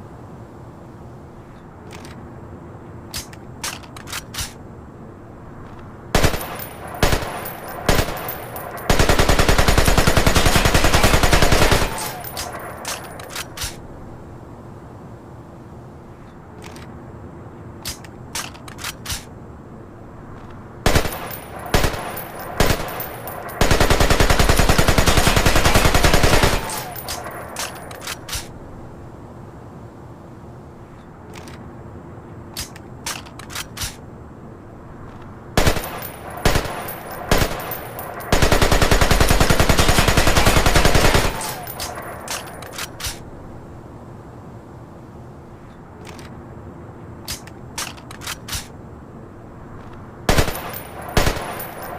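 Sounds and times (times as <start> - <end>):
rifle single shots: 6.2 - 13.8, 20.8 - 28.5, 35.6 - 43.2, 50.3 - 51.9.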